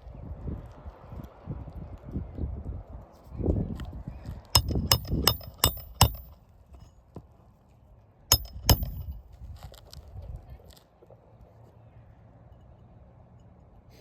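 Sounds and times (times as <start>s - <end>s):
hand tools clinking on roof: 4.6s - 6.9s, 8.3s - 9.1s.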